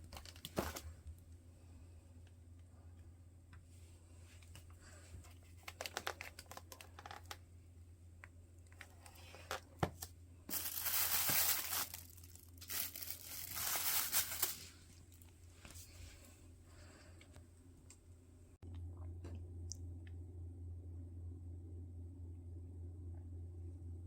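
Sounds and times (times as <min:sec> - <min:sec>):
packaging crinkling and tearing: 0:00.0 - 0:00.8, 0:05.4 - 0:07.4, 0:08.8 - 0:14.8.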